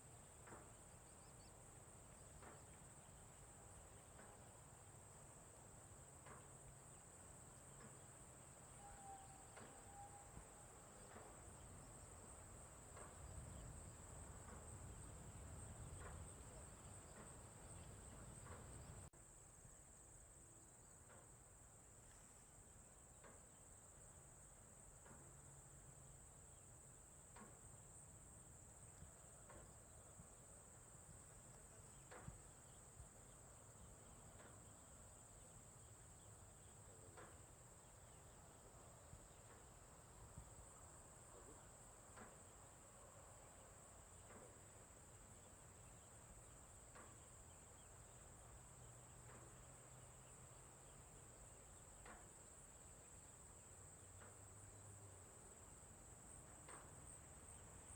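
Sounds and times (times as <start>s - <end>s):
crickets chirring: 0.0s - 19.1s, 25.4s - 57.9s
soft ticks: 6.2s - 6.8s, 11.0s - 19.1s, 23.2s - 23.6s, 27.3s - 27.6s, 31.5s - 32.8s, 34.0s - 34.8s, 35.4s - 40.5s, 41.4s - 42.8s, 43.5s - 48.2s, 49.2s - 52.8s, 54.0s - 54.5s, 56.3s - 57.6s.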